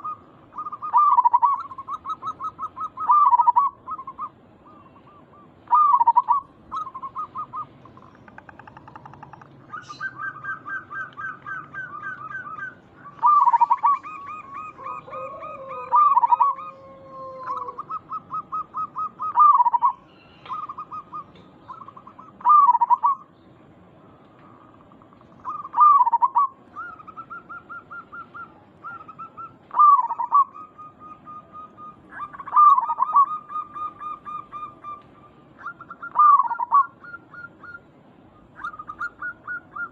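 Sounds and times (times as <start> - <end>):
doves cooing: 0.0 - 23.3, 24.1 - 39.9.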